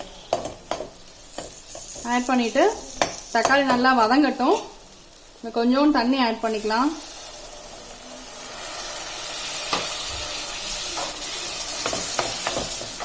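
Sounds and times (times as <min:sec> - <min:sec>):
spoon scraping a pan: 0:00.0 - 0:04.8, 0:08.5 - 0:13.0
food sizzling in oil: 0:00.0 - 0:13.0.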